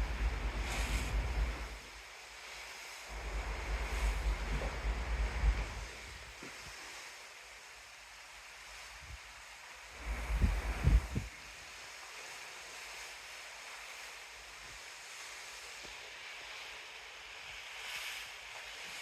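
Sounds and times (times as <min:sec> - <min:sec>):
wind buffeting microphone: 0:00.0 - 0:01.8, 0:03.1 - 0:06.3, 0:10.0 - 0:11.3
open sea rushing: 0:00.0 - 0:19.0.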